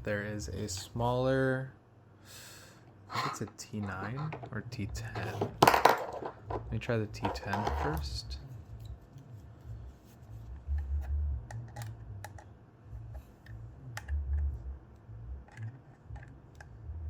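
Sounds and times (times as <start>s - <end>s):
plastic parts handled: 3.2s - 8.2s.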